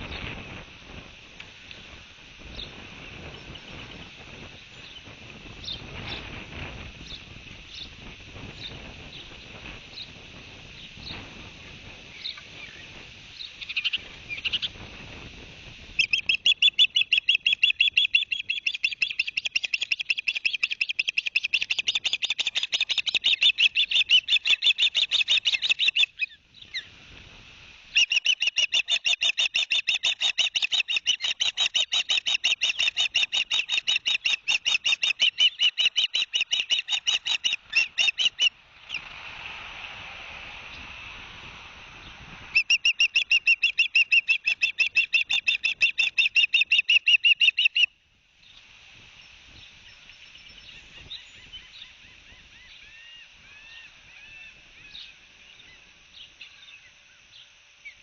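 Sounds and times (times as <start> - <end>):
osprey chirping: 16.0 - 26.9, 28.0 - 39.1, 42.6 - 47.9.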